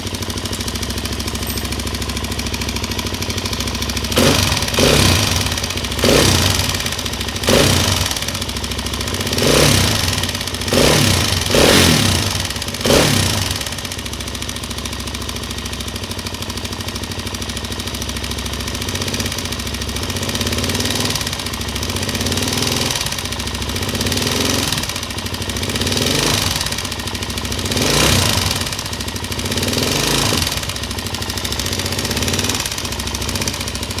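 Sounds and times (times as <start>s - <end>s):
quad engine revving: 4.0s - 13.8s, 22.2s - 25.0s, 25.6s - 31.0s, 31.6s - 34.0s.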